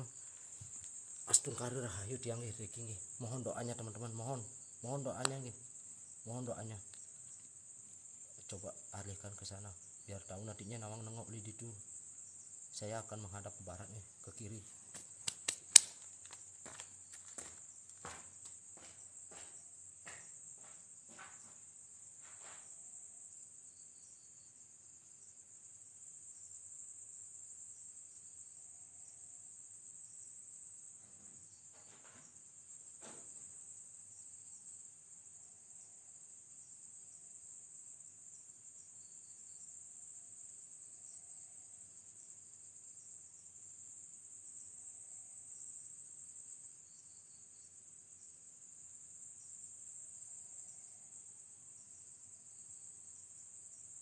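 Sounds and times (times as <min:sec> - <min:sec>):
crickets chirping: 0:00.0 - 0:54.0
faint knocks or steps: 0:14.6 - 0:22.7, 0:31.0 - 0:33.5.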